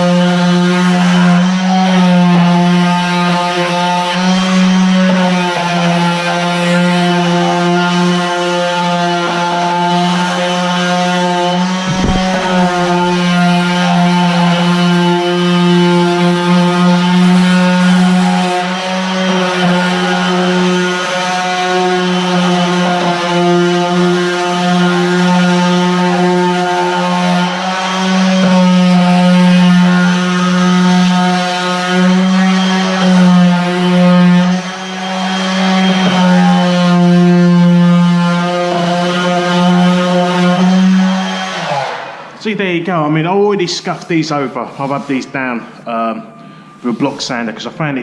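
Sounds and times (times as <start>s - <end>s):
knock: 11.9s - 13.2s
orbital sander motor hum: 11.9s - 13.6s.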